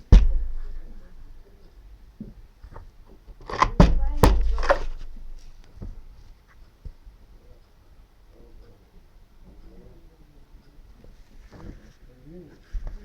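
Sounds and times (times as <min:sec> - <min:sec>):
loud knocks or thuds: 0:00.0 - 0:00.9, 0:03.5 - 0:06.0.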